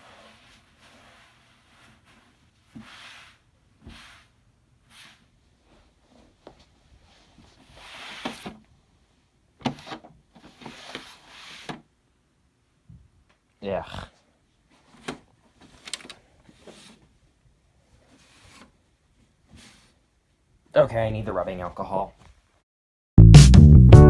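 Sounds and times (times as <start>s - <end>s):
rubs and scrapes on computer case: 0.0s - 8.6s, 9.6s - 11.9s, 14.7s - 17.2s, 17.9s - 20.1s.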